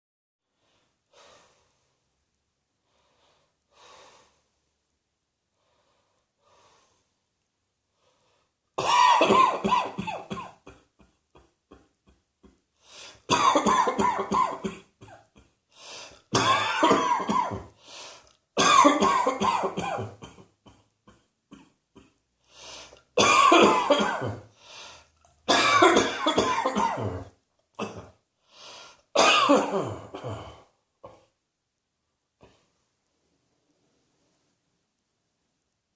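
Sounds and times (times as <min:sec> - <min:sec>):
person coughing in fits: 0:08.8 - 0:11.9, 0:13.3 - 0:15.5, 0:16.3 - 0:17.7, 0:18.6 - 0:22.2, 0:23.2 - 0:24.5, 0:25.5 - 0:28.2, 0:29.2 - 0:31.3.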